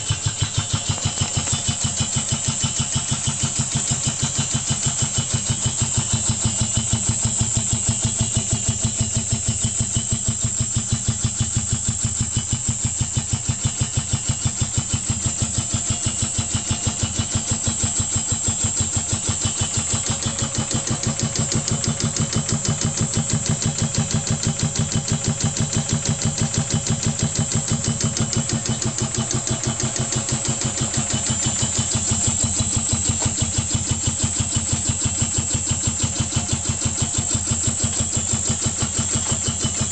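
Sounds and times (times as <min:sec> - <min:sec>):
air compressor pumping: 0:00.0 - 0:39.9.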